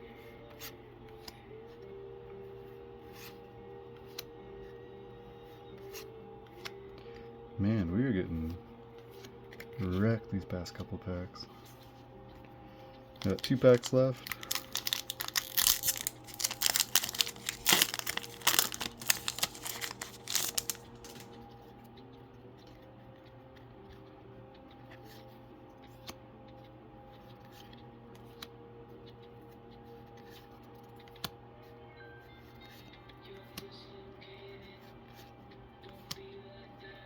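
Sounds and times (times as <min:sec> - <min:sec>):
foil wrapper tearing and crinkling: 0:13.2 - 0:21.3.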